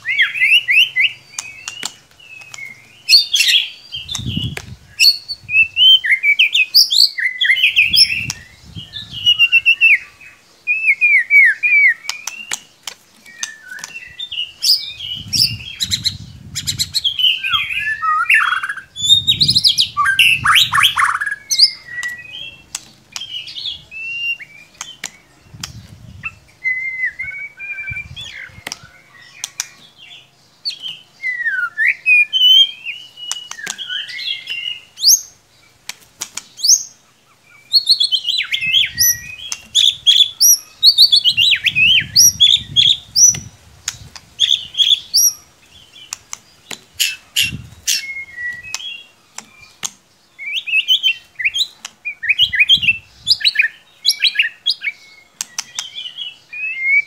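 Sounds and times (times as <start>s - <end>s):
bird singing whistled phrases: 0.0s - 12.6s, 13.3s - 29.8s, 30.6s - 35.3s, 37.5s - 43.5s, 47.0s - 49.6s, 50.4s - 57.0s.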